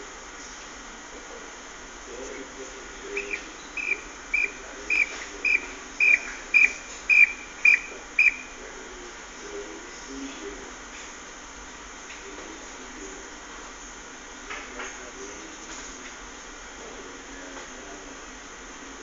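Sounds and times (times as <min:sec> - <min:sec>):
high whistle-like chirps: 0:03.2 - 0:08.6.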